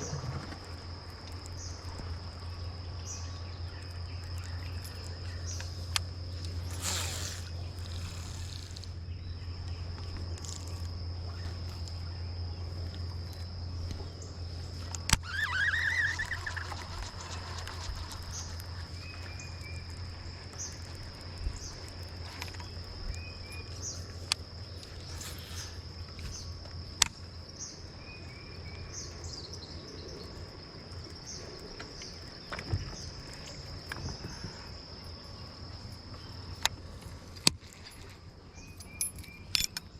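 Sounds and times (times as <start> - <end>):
steady low hum: 0.0 - 15.3
crickets chirping: 0.0 - 39.9
low steady hum: 0.0 - 39.9
bird wavering call: 15.2 - 17.8.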